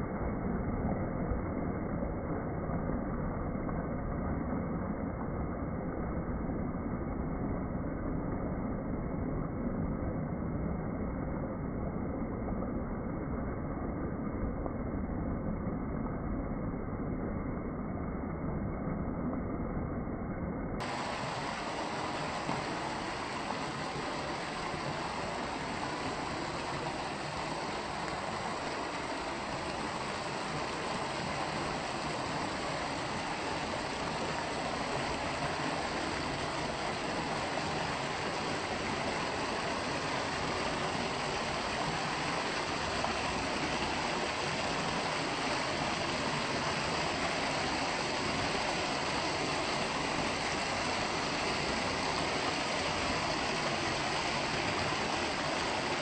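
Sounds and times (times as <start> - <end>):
river water rushing over rapids: 20.8 - 56.0.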